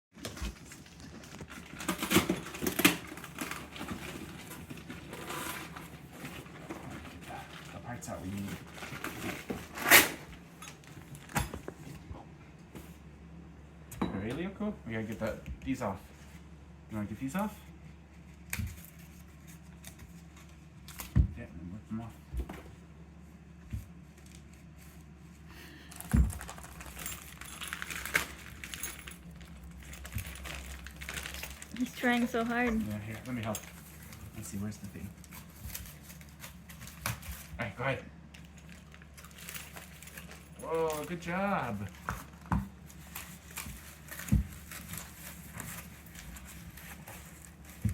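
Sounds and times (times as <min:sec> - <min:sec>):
packaging rattling and crinkling: 0:00.2 - 0:11.8, 0:25.9 - 0:37.7, 0:38.3 - 0:47.9.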